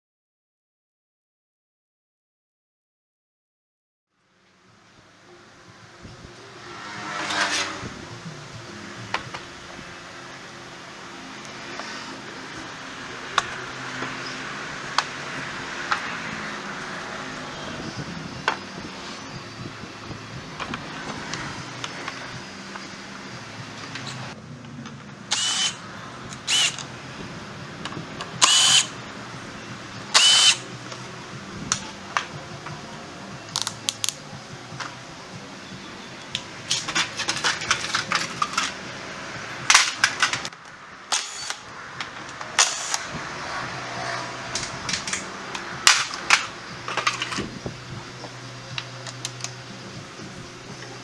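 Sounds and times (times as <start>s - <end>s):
power tool bursts: 6.5s - 8.1s, 25.3s - 26.9s, 28.2s - 29.0s, 30.0s - 31.0s, 41.1s - 47.6s
metal tools clicking and knocking: 44.5s - 47.5s.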